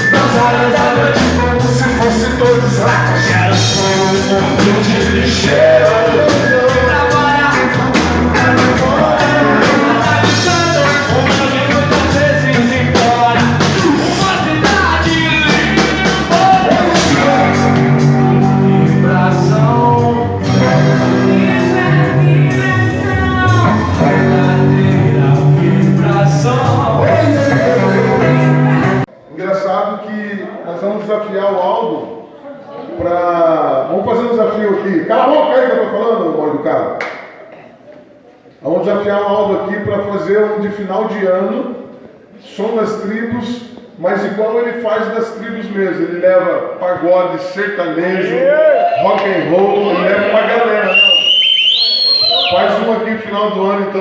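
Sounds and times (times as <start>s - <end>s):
person singing: 0.0s - 29.1s
rock band playing: 0.0s - 29.1s.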